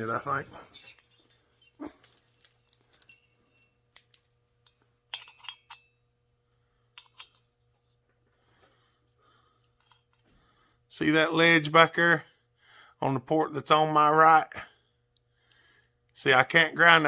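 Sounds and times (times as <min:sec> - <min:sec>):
faint low hum: 0:00.0 - 0:17.0
metallic clinks and taps: 0:00.2 - 0:06.0, 0:06.9 - 0:08.0.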